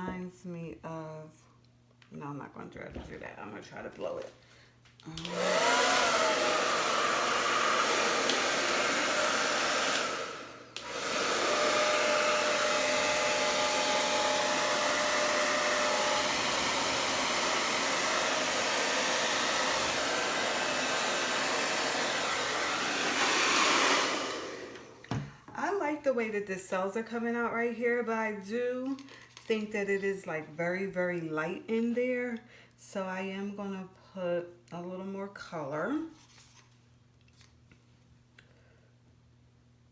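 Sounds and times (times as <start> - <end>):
blow dryer blowing air: 5.1 - 26.4.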